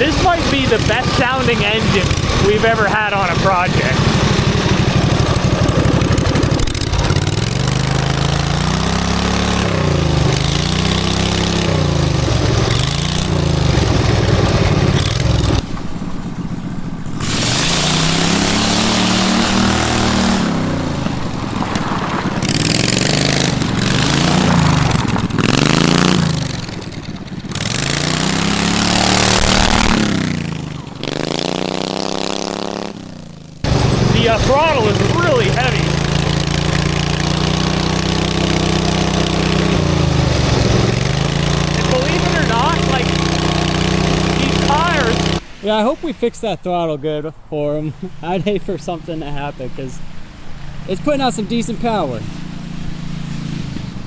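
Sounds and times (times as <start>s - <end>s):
quad engine revving: 0.0s - 46.0s, 50.8s - 54.0s.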